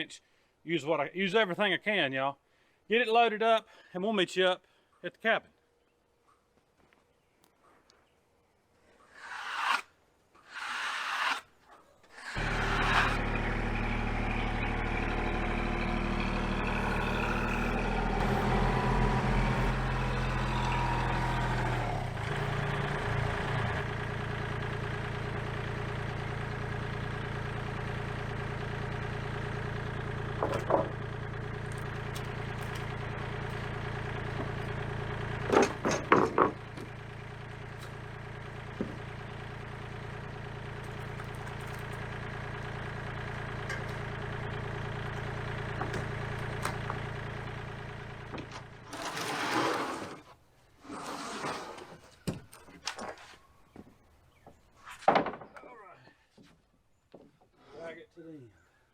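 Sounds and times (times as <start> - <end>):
farm vehicle engine running: 12.2 - 50.0.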